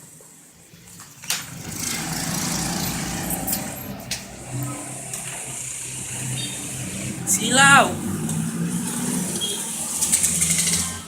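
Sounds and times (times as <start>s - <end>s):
vehicle engine running: 0.7s - 10.7s.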